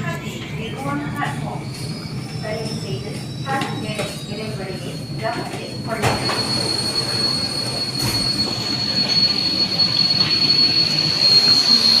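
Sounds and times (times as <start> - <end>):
train rumble: 0.0 - 12.0
train wheels squealing: 0.3 - 12.0.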